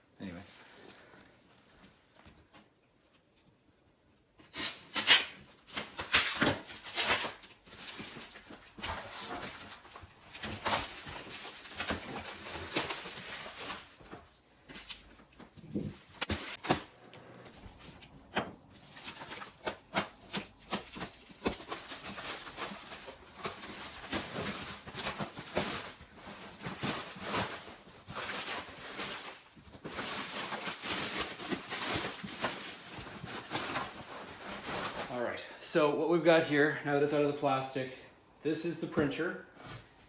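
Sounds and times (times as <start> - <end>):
plastic and cardboard crinkling: 0.1 - 3.6, 5.7 - 17.5
knocks and scrapes: 0.2 - 2.4, 15.7 - 17.6.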